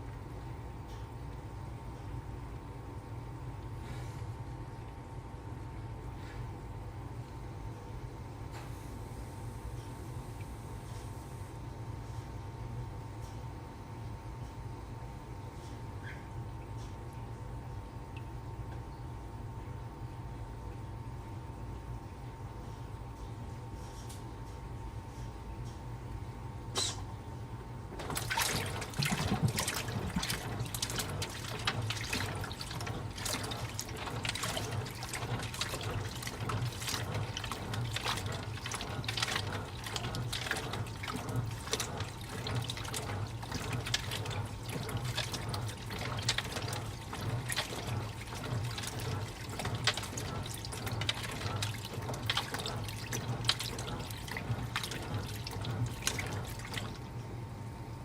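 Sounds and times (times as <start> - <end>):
water sloshing in washing machine: 0.0 - 12.4, 27.6 - 58.0
low machine hum: 0.0 - 58.0.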